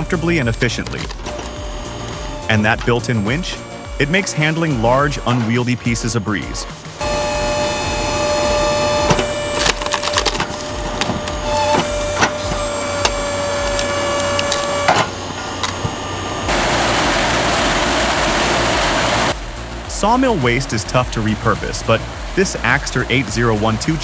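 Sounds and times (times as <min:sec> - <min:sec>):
machine whine: 0:00.0 - 0:24.0
rushing noise of chipping: 0:00.0 - 0:24.0
wood cracking and splintering: 0:09.1 - 0:16.0.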